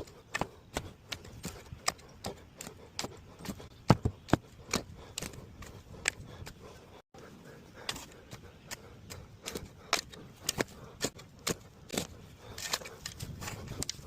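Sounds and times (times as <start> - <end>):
shovel scraping dirt and stones: 7.8 - 14.0.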